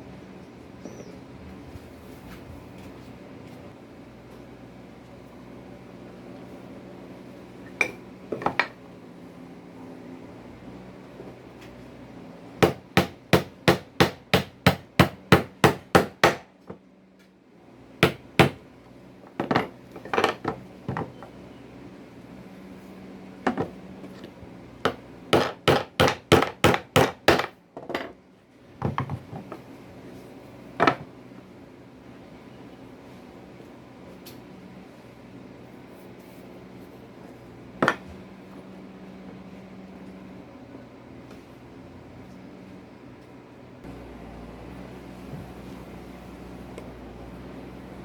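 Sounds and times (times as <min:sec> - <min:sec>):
hammer striking wood: 0:12.6 - 0:16.5, 0:18.0 - 0:18.6, 0:24.9 - 0:27.6.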